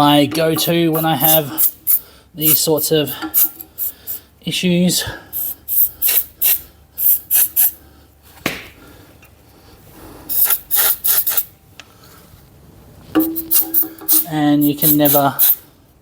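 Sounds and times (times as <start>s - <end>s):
aerosol spray hissing bursts: 1.0s - 4.2s, 5.3s - 7.8s, 10.3s - 11.5s, 13.2s - 15.6s.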